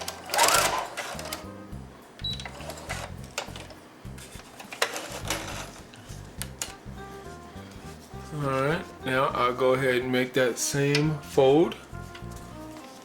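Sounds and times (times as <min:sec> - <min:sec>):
sewing machine stitching: 0:00.0 - 0:01.5, 0:04.7 - 0:05.8.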